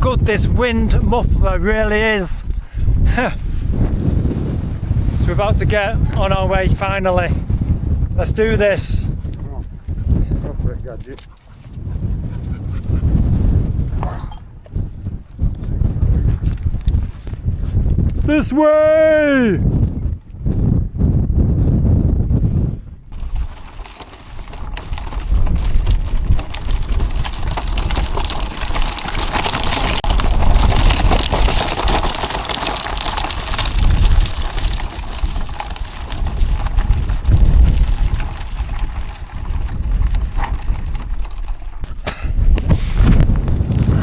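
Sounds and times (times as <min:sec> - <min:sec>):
wind rumble on microphone: 0:00.0 - 0:44.0
cart rattling over rough track: 0:03.8 - 0:17.2, 0:23.1 - 0:44.0
footsteps: 0:23.2 - 0:43.2.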